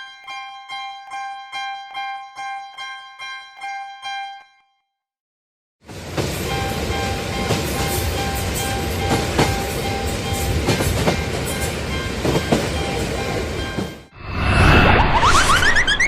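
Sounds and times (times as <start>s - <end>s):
level-crossing warning bell: 0.0s - 4.6s, 6.3s - 14.1s
train wheels clattering over rails: 5.9s - 14.0s.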